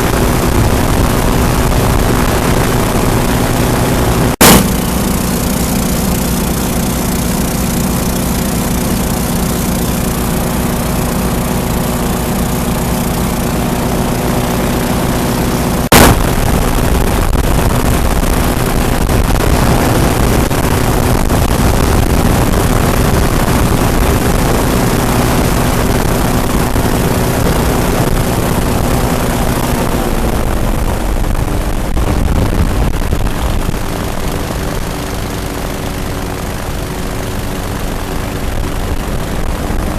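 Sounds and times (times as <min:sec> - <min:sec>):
airboat engines droning: 0:00.0 - 0:39.9
sharp crack: 0:04.3 - 0:07.0, 0:15.8 - 0:19.8.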